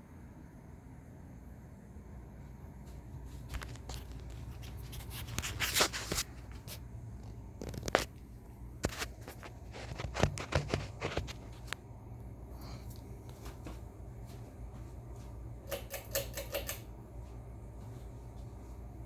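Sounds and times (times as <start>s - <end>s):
steady low hum: 0.0s - 19.0s
handling clicks and rustles: 3.3s - 11.9s, 15.6s - 17.0s.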